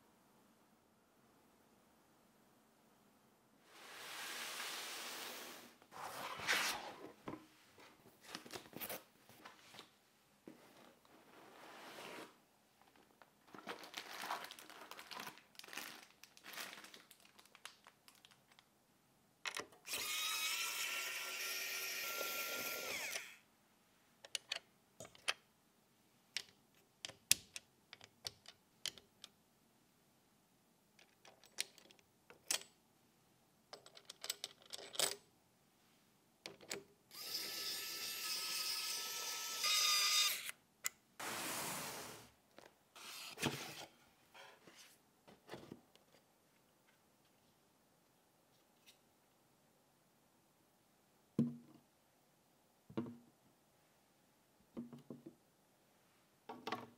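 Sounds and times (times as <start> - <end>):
electric screwdriver whirring: 19.9 - 23.4, 37.1 - 40.5
parts clicking and knocking: 24.2 - 25.5, 26.3 - 29.4, 33.7 - 35.3.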